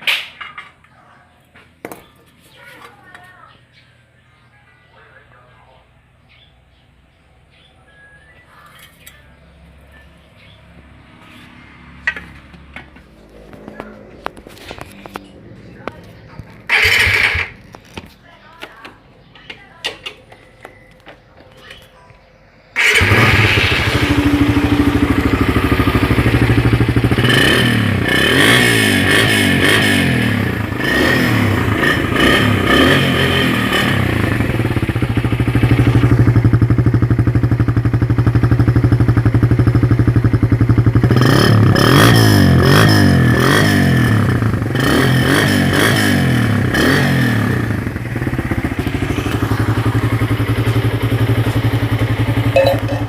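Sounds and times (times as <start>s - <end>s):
motorcycle engine idling: 11.8s - 18.6s, 20.2s - 53.0s
motorcycle throttle blips: 12.0s - 21.9s, 22.8s - 53.0s.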